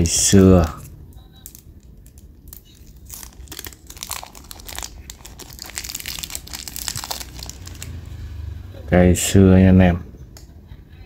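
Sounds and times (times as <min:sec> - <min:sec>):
packaging crinkling and rustling: 0:00.4 - 0:08.2.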